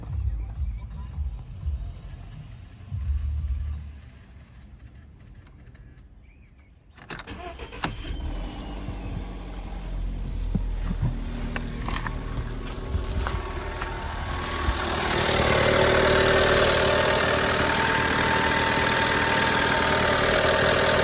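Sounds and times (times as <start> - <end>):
car engine starting and running: 7.0 - 21.0.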